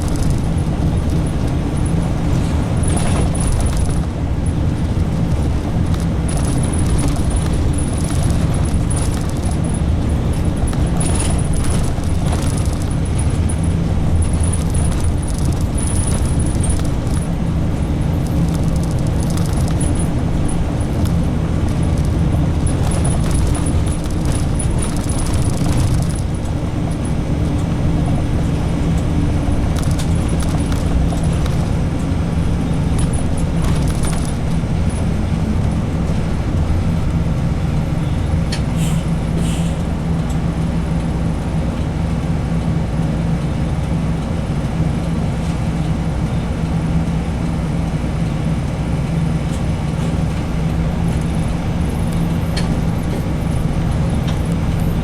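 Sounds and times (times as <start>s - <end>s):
bodywork rattling: 0.0s - 41.2s
bus engine drone: 0.0s - 55.0s
road noise: 0.0s - 55.0s.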